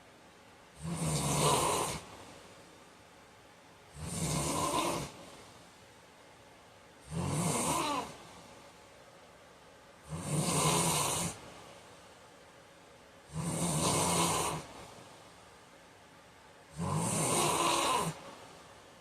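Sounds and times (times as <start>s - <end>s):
man snoring: 0.8s - 2.0s, 4.0s - 5.2s, 7.1s - 8.2s, 10.1s - 11.4s, 13.3s - 14.7s, 16.7s - 18.2s.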